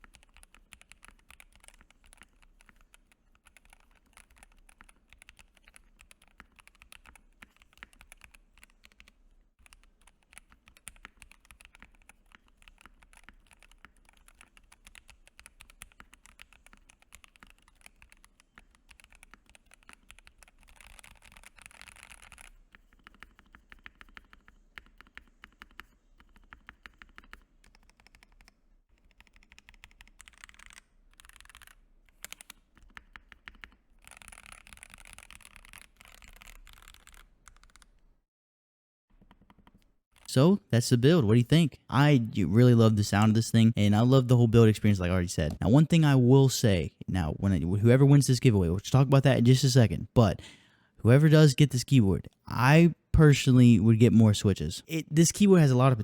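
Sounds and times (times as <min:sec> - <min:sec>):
mechanical keyboard typing: 0:00.0 - 0:37.9.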